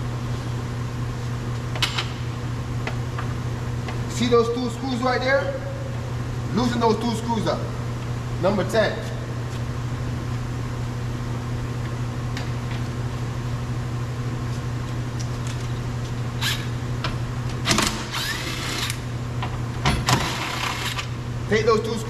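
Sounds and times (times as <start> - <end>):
steady low hum: 0.0 - 22.0
tool noise bursts: 16.4 - 16.8, 17.6 - 19.0, 19.9 - 21.2.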